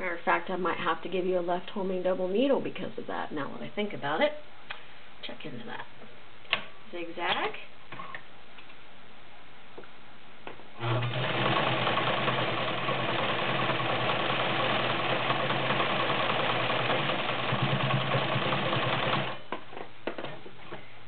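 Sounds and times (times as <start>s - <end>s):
sewing machine running: 10.8s - 19.4s.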